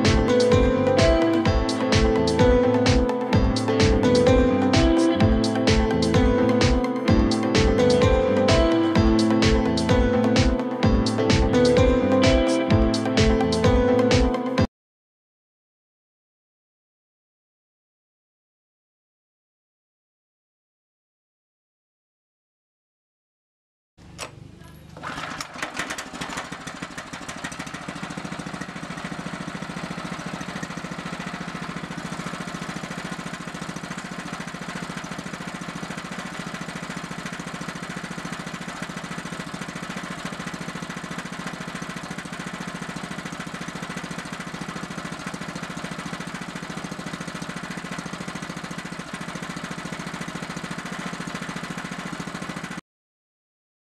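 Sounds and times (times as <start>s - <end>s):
small petrol engine running: 24.2s - 52.8s.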